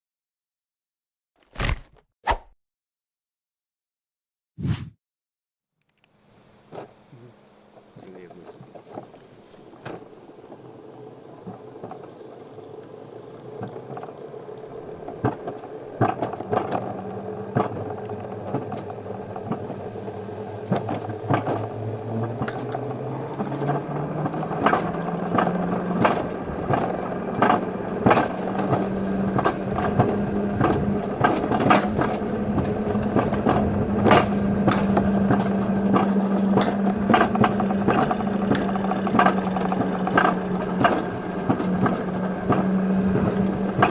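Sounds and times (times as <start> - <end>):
coaster sled humming on rail: 6.2 - 43.9
sharp clacks of rail: 23.5 - 43.9.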